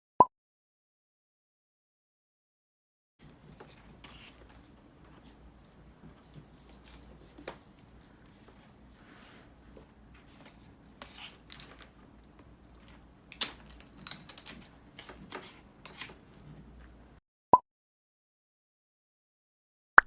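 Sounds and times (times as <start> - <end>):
light clicks and rustles: 3.2 - 17.0.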